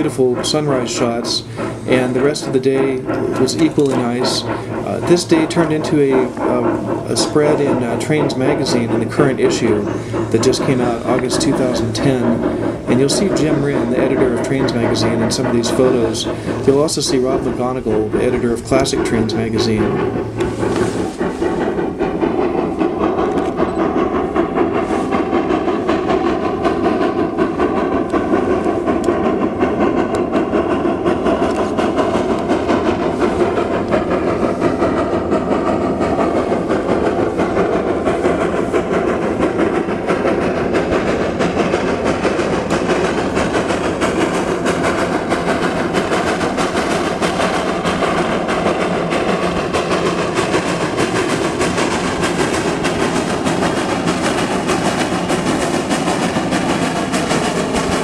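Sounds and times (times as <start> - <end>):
steel wheels clicking over rails: 0.0 - 58.0
train rumbling along track: 0.0 - 58.0.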